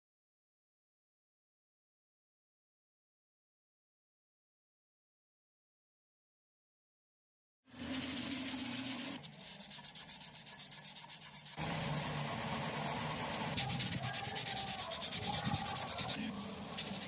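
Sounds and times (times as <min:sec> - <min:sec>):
hand sanding strokes: 0:07.7 - 0:17.0.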